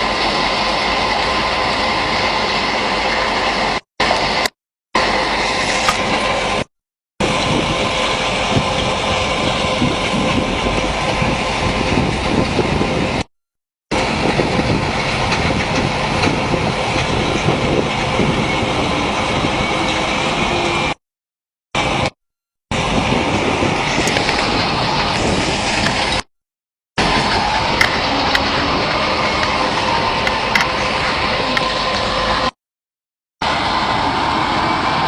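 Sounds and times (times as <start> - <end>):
rattle of sand and stones: 23.3 - 26.2.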